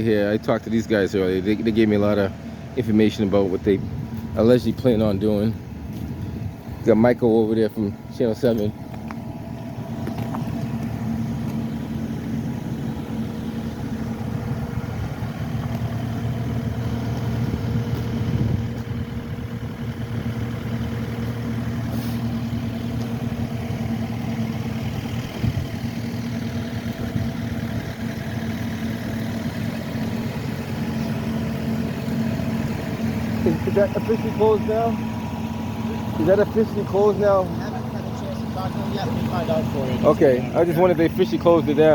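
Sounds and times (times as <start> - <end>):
engine idling: 0.0 - 41.9.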